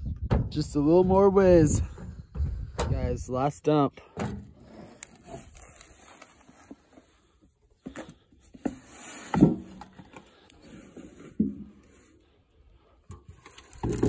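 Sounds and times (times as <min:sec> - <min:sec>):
dull knocks and scrapes: 0:07.8 - 0:12.2, 0:13.1 - 0:14.0.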